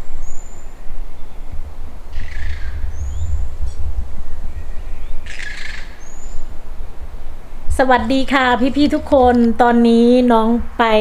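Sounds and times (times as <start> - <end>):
steady low microphone rumble: 0.0 - 11.0
short harsh bird calls: 2.1 - 3.8, 4.5 - 6.5.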